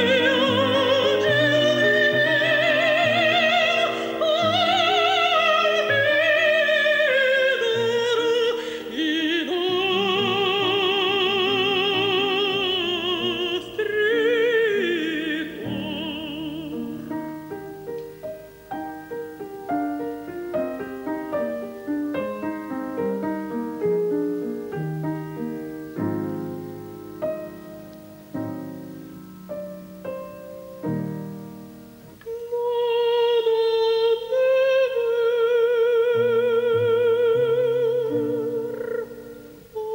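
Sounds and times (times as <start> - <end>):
female opera singing: 0.0 - 17.9, 32.2 - 39.9
piano: 0.0 - 39.9.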